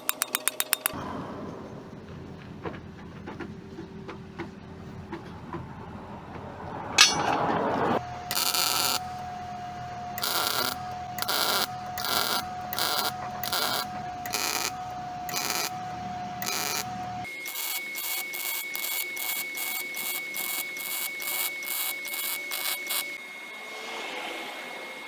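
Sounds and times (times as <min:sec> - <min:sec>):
metalworking power tool: 0:00.0 - 0:01.0, 0:07.0 - 0:25.0.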